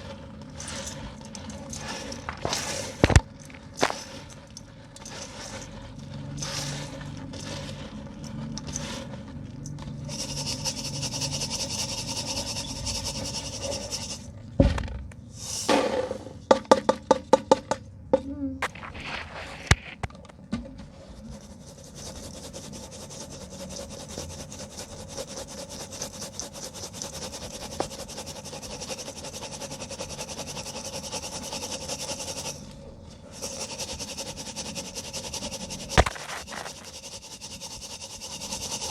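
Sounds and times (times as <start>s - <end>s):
cement lumps crumbled by hand: 36.0s - 36.8s.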